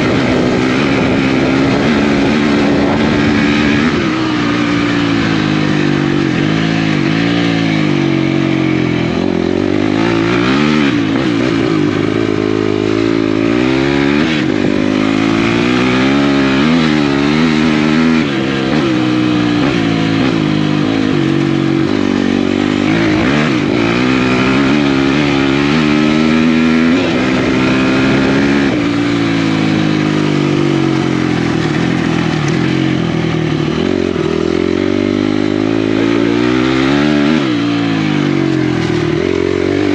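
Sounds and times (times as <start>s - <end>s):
off-road motorcycle engine revving: 0.0s - 39.9s.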